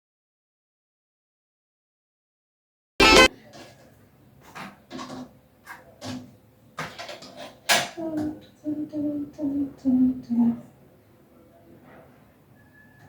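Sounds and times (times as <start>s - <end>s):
dishes and utensils clattering: 4.6s - 8.0s.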